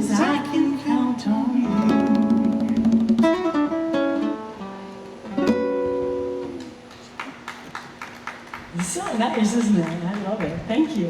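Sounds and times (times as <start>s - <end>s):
acoustic guitar strumming: 0.0s - 7.5s.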